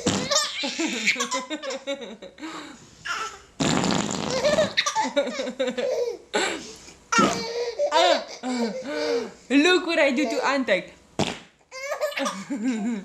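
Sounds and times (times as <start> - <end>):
loud fart sound: 0.0 - 0.5, 3.6 - 4.8, 7.2 - 7.4, 11.2 - 11.5
baby laughing: 0.0 - 2.1, 4.2 - 6.2, 7.1 - 9.2, 11.7 - 13.0.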